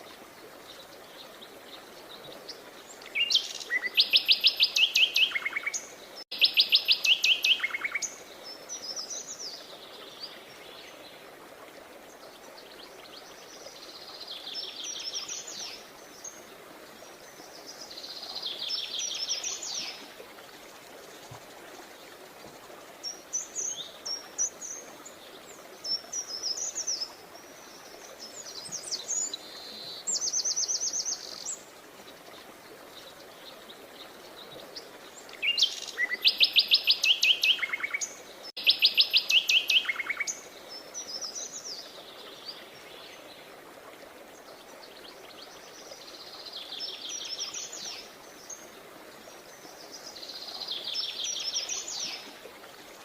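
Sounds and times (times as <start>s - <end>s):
songbirds singing trilled phrases: 34.3s - 43.3s.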